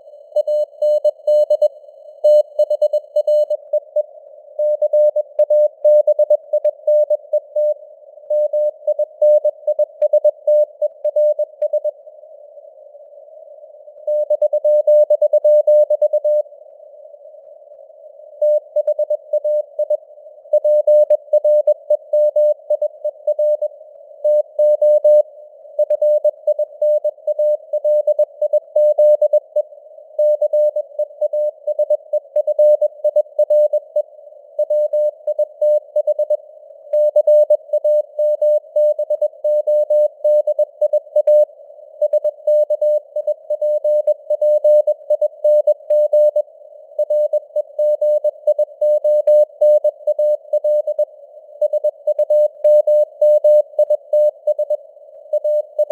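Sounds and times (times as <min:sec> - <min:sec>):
morse code beeps: 0:47.0 - 0:51.0, 0:51.6 - 0:54.8.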